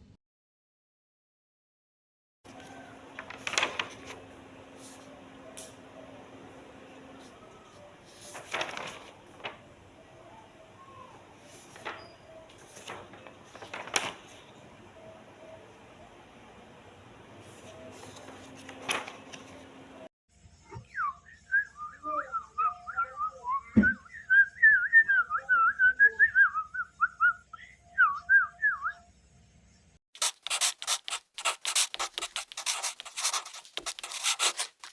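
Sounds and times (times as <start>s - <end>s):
scratching strokes: 30.2s - 34.9s.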